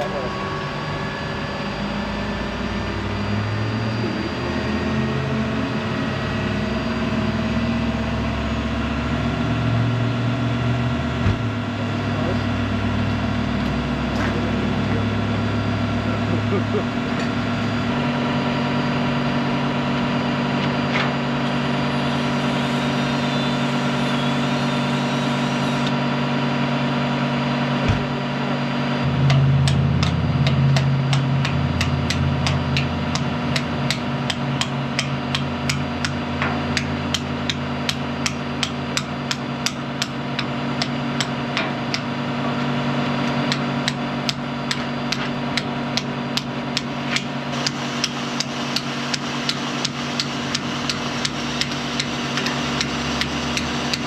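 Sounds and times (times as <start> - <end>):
excavator engine running: 0.0 - 54.0
hammer striking: 29.0 - 42.1.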